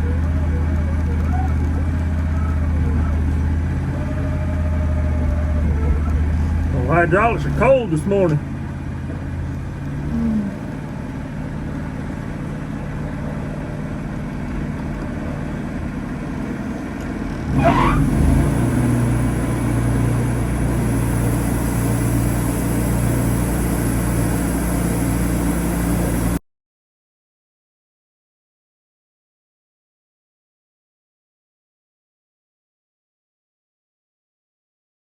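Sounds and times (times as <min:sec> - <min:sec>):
rising squeal: 0:00.0 - 0:08.0, 0:17.3 - 0:26.4
sawmill engine running: 0:00.0 - 0:26.4.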